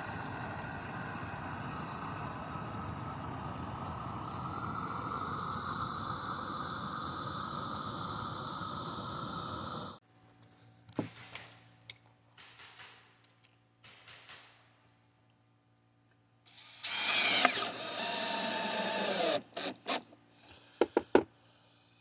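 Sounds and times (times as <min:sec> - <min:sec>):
circular saw whining: 0:00.0 - 0:10.0, 0:16.5 - 0:20.2.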